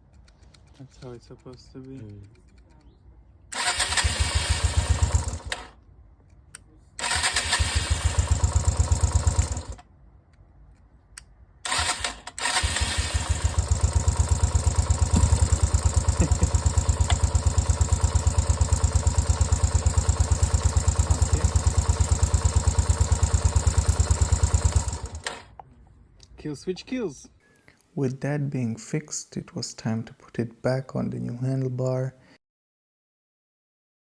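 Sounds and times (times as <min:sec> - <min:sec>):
motorcycle engine idling: 0:03.6 - 0:05.5, 0:07.5 - 0:09.8, 0:12.5 - 0:25.2.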